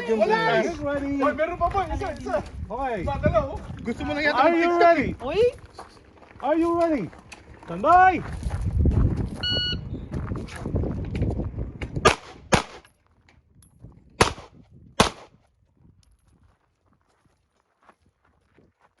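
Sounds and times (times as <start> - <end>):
shot timer beep: 9.4 - 9.8
handgun shots: 12.0 - 12.9, 14.2 - 15.4.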